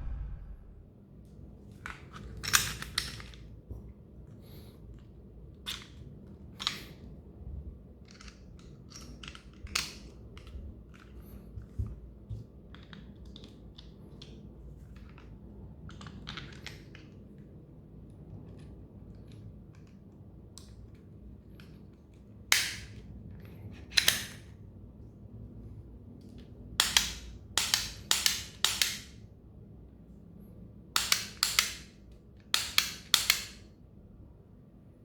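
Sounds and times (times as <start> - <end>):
pistol trigger clicks: 26.8 - 29.2, 31.0 - 31.9, 32.5 - 33.7.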